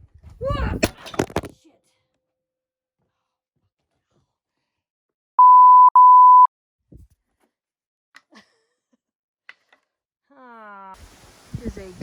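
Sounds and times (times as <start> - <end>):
electronic beep: 5.4 - 6.5.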